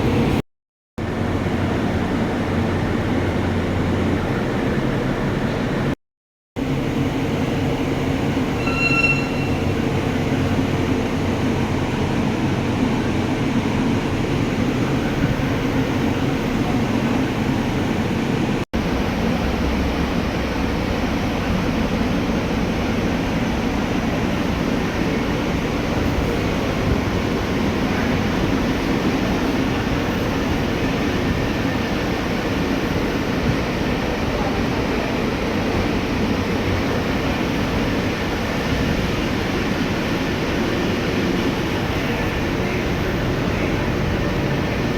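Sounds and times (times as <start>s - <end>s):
short high beep: 8.5s - 10.0s.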